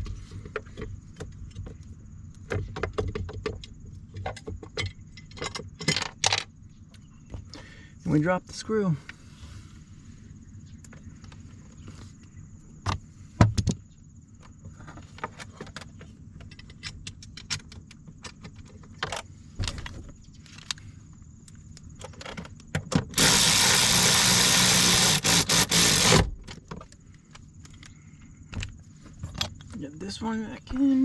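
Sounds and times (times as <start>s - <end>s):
cordless power tool driving bolt: 23.0s - 26.5s.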